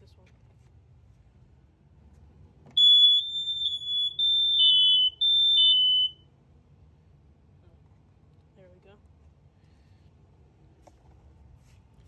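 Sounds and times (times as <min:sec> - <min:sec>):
smoke alarms beeping: 0:02.8 - 0:06.3.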